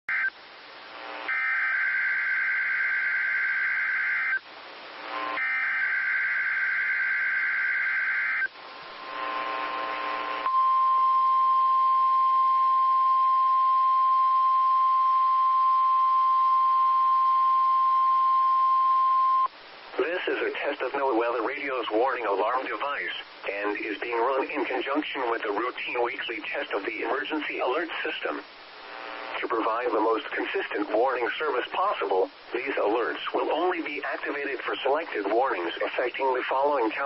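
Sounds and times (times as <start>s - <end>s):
radio hiss: 0.1s - 10.5s, 19.1s - 37.0s
steady warning alarm tone: 5.3s - 8.5s.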